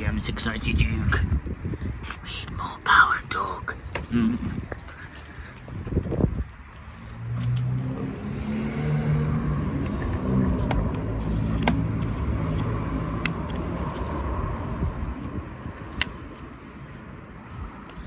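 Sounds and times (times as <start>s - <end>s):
vehicle engine running: 5.1s - 18.0s.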